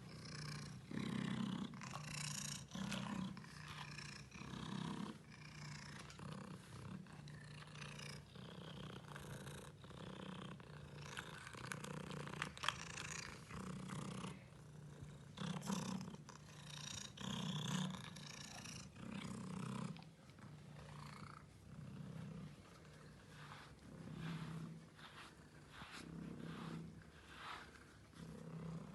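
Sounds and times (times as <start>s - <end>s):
cat purring: 0.0s - 28.9s.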